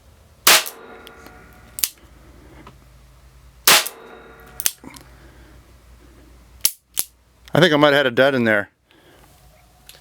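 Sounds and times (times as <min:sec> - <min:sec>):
blank revolver shots: 0:00.4 - 0:01.0, 0:03.6 - 0:04.8.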